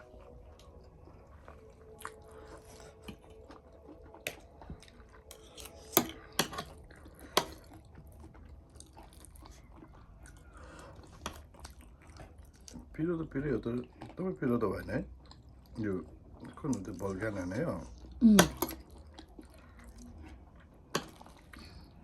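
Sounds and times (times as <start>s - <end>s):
person chewing food: 0.0s - 22.0s.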